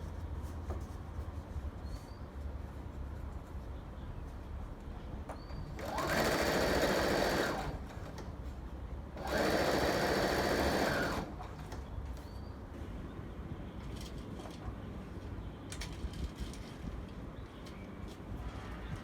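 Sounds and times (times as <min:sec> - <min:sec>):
sewing machine stitching: 0:05.8 - 0:07.9, 0:09.2 - 0:11.4.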